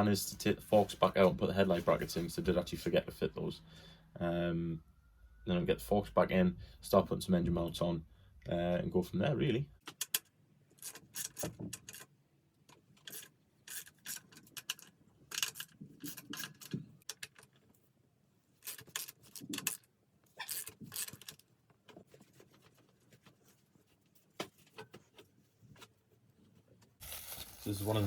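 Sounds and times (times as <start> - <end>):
rubbing and scraping of parts: 0.0 - 3.0, 9.8 - 28.0.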